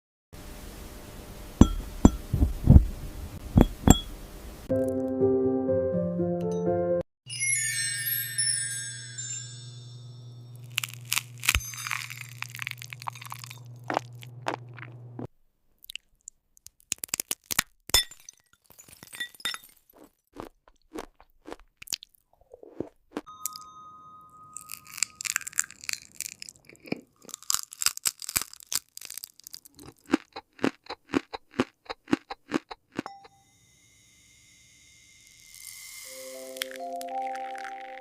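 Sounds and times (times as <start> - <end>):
crisp crunching and cracking: 10.6 - 15.3, 15.9 - 17.8, 24.6 - 33.0
brief ringing tone: 33.1 - 35.2.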